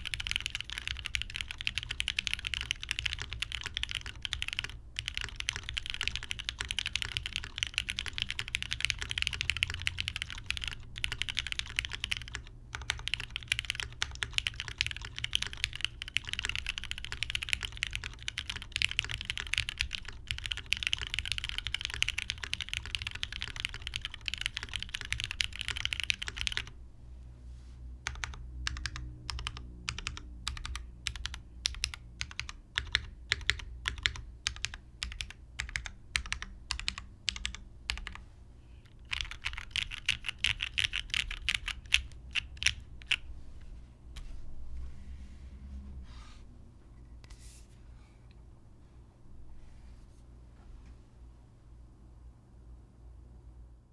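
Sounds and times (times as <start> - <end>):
mechanical keyboard typing: 0.0 - 26.8, 28.0 - 38.2, 38.9 - 43.3.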